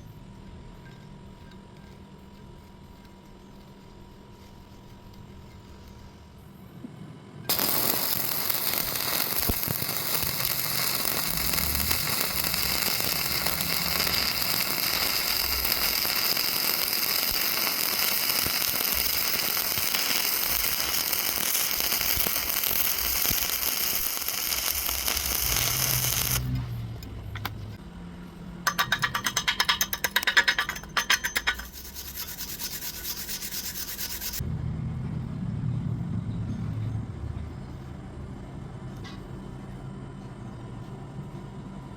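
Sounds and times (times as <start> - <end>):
welding arc crackling hiss: 7.5 - 26.6, 31.5 - 34.4
sharp scraping strokes: 31.3 - 34.4.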